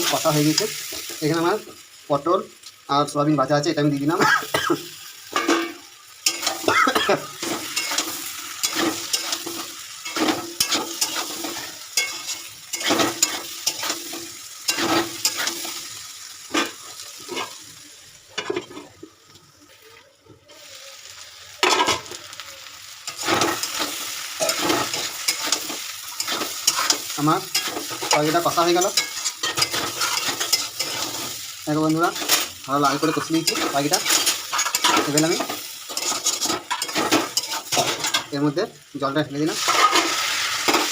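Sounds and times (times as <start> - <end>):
hot oil sizzling: 0.0 - 40.9
spoon scraping and knocking pan: 5.3 - 15.9, 23.1 - 38.3.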